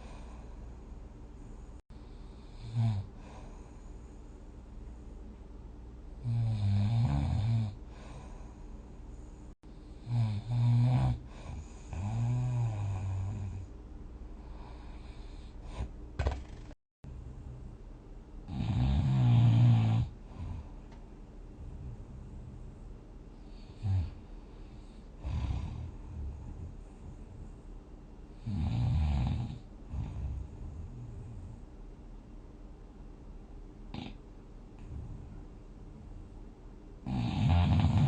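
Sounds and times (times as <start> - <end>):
person snoring: 2.3 - 3.8, 6.2 - 8.5, 10.0 - 13.7, 18.5 - 20.6, 23.6 - 24.2, 28.4 - 30.2, 37.0 - 38.0.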